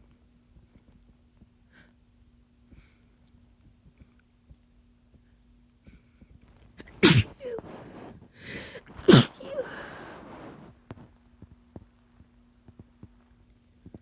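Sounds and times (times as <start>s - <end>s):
person sneezing: 6.8s - 10.7s
sharp intake of breath: 6.8s - 10.7s.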